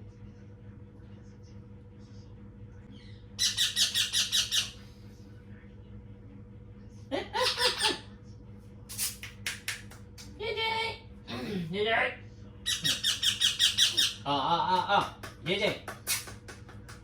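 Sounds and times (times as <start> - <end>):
parrot squawking: 3.4 - 4.8, 7.4 - 8.0, 12.6 - 14.3.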